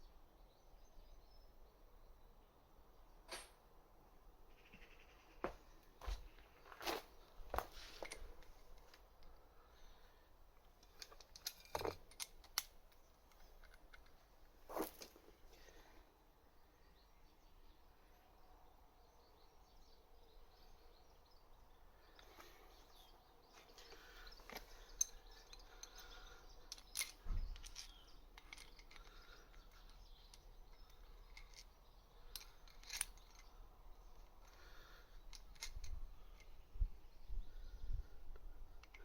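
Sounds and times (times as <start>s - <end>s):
metallic clicks of hand tools: 10.8s - 14.2s, 32.3s - 33.5s.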